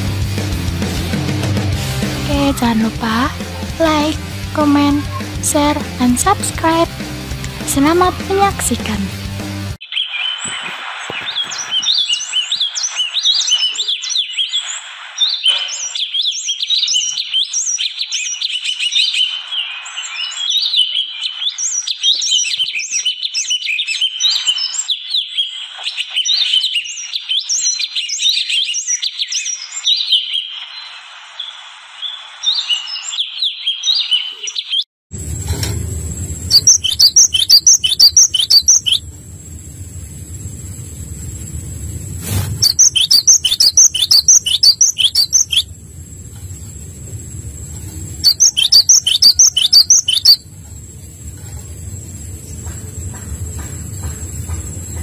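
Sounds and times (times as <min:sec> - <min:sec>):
songbirds chirping chorus: 0:02.0 - 0:09.0, 0:09.8 - 0:34.8, 0:36.3 - 0:55.0
low hum: 0:35.2 - 0:55.0.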